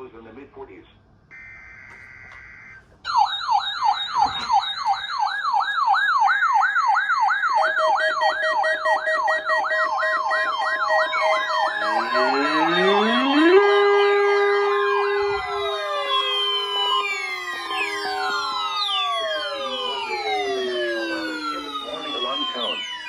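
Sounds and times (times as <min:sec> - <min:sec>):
warbling siren-like alert tone: 0:01.4 - 0:23.0
steady alert tones: 0:07.6 - 0:23.0
rising tone glides: 0:09.2 - 0:23.0
data screech: 0:09.4 - 0:23.0.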